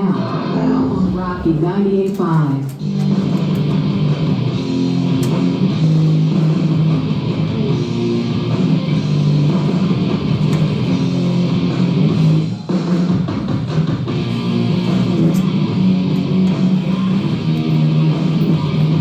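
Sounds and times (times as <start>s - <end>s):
rock song on radio: 0.0s - 19.0s.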